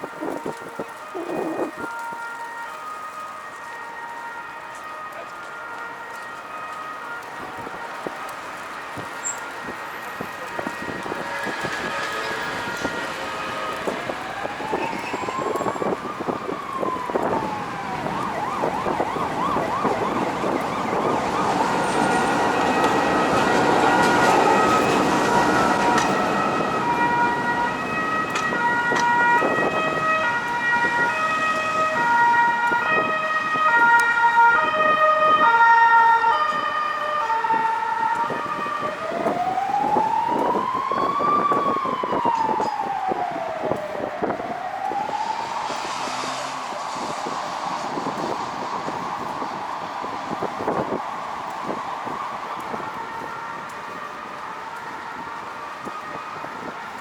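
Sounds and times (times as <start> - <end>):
siren stepped tones: 0.0 - 2.6, 9.0 - 57.0
siren wailing: 0.0 - 57.0
street traffic: 0.0 - 57.0.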